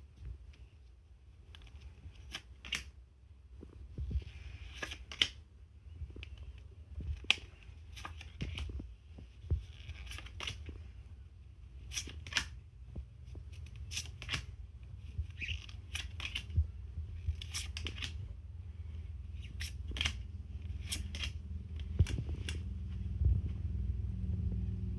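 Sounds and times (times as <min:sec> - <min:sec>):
low steady hum: 0:00.0 - 0:24.9
cards sliding rustles: 0:01.5 - 0:02.9, 0:04.1 - 0:05.4, 0:06.2 - 0:11.0, 0:11.6 - 0:23.0
cards clicking and snapping: 0:01.6 - 0:02.9, 0:04.6 - 0:05.4, 0:06.2 - 0:08.7, 0:09.7 - 0:10.8, 0:11.8 - 0:12.6, 0:13.4 - 0:14.6, 0:15.2 - 0:16.6, 0:17.2 - 0:18.3, 0:19.3 - 0:22.6.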